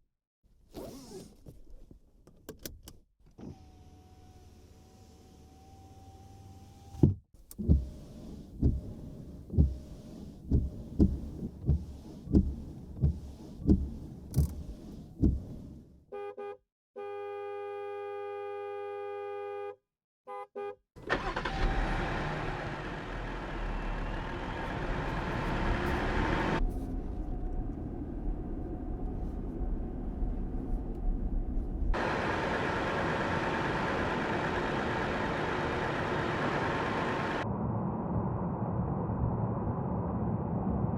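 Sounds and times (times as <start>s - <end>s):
short horn beeps: 16.1s - 20.8s
car horn blast: 16.1s - 21.3s
car engine running: 21.0s - 37.4s.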